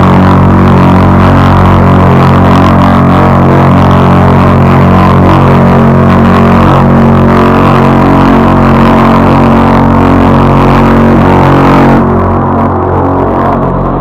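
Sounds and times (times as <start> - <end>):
deep horn blast: 0.0 - 14.0.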